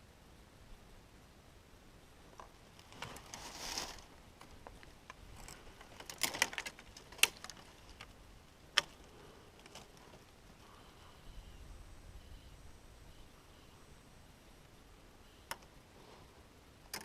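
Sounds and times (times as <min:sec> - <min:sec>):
brief rustle: 0:02.8 - 0:04.8.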